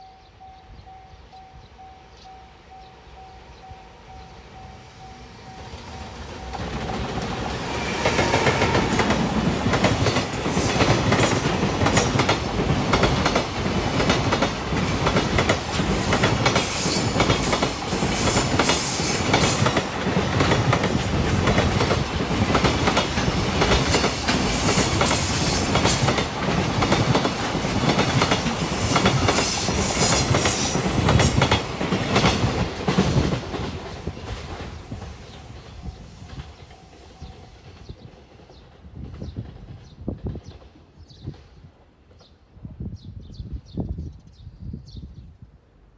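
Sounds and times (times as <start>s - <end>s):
train wheels clattering on rails: 5.6s - 42.4s.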